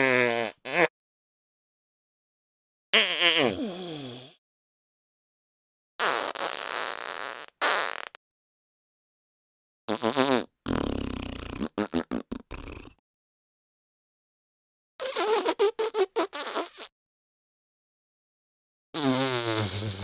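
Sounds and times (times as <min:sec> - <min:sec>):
fart sound effects: 0:06.0 - 0:08.2, 0:09.9 - 0:13.0, 0:19.0 - 0:20.0.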